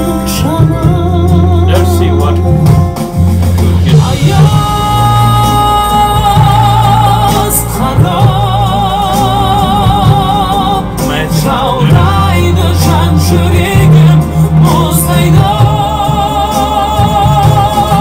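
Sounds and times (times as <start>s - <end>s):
man singing high notes: 0.0s - 3.0s, 3.8s - 18.0s
pop ballad accompaniment: 0.0s - 18.0s.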